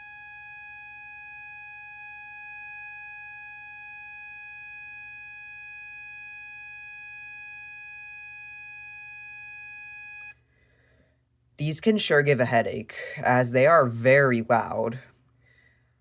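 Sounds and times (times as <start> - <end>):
fire alarm horn low tone: 0.0 - 10.4.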